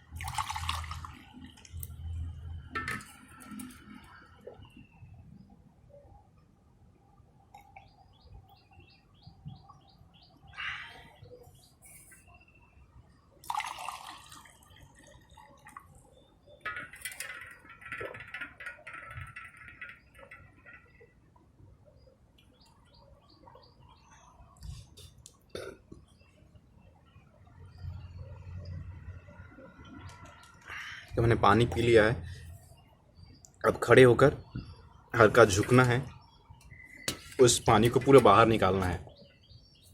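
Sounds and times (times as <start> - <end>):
birds chirping: 7.5 - 13.7, 14.4 - 39.9
person gulping water: 25.5 - 26.0.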